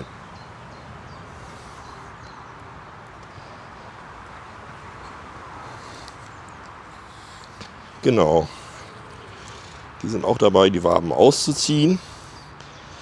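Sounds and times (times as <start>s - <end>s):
honey bees humming: 0.0s - 13.0s
faint clicks: 1.8s - 3.6s.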